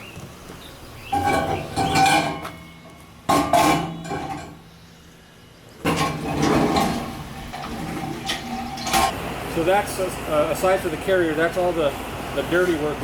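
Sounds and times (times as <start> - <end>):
metal parts clanking and scraping: 1.1 - 4.6, 5.8 - 9.1.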